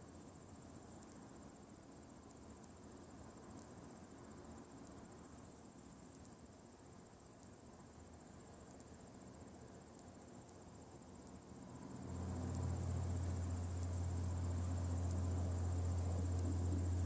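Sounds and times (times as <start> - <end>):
faint high pulsing tone: 11.2 - 17.0
deep low hum: 12.0 - 17.0.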